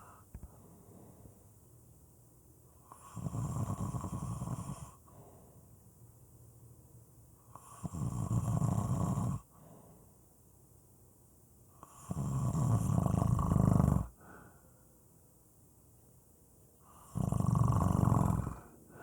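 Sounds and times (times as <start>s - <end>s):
quiet breathing: 0.0s - 2.0s, 2.6s - 10.5s, 11.6s - 15.5s, 16.7s - 19.0s
person snoring: 2.9s - 5.0s, 7.5s - 9.4s, 11.8s - 14.4s, 16.9s - 19.0s.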